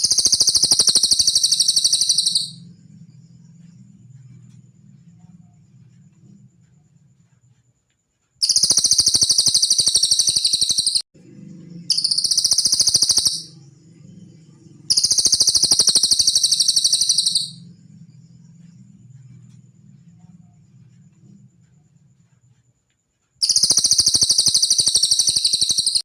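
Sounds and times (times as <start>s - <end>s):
bird song trills: 0.0s - 4.0s, 8.4s - 11.0s, 11.6s - 18.9s, 23.4s - 26.0s
faint low hum: 0.0s - 8.9s, 11.2s - 24.0s.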